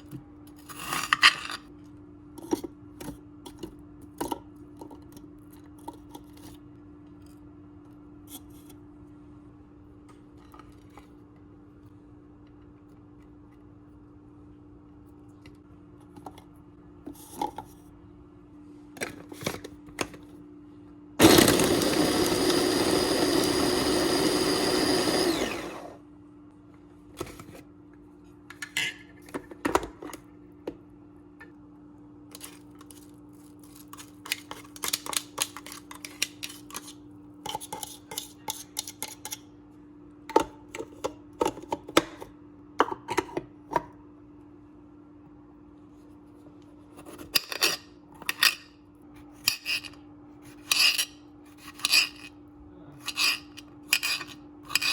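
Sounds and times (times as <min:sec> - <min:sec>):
electric food processor running: 0:21.2 - 0:26.0.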